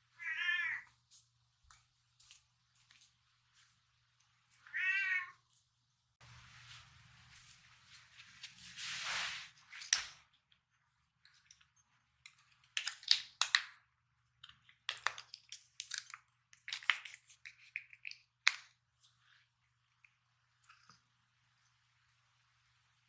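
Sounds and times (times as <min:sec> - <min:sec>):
brief rustle: 0:07.4 - 0:10.2
cat crunching dry treats: 0:14.4 - 0:19.2.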